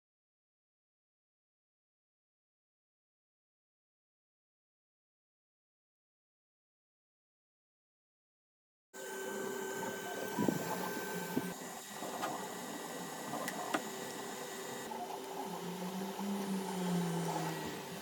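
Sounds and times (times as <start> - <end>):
three-d printer whirring: 9.0 - 18.0.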